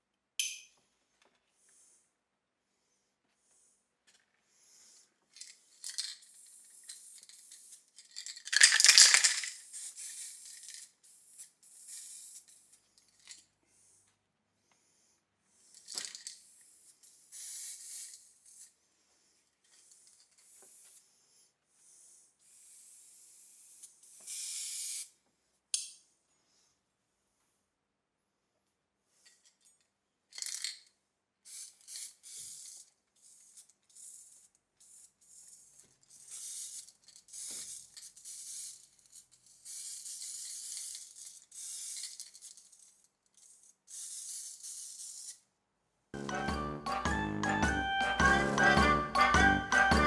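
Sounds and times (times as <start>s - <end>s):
small metal parts rattling: 5.3s - 13.5s, 15.7s - 18.7s, 29.2s - 45.4s.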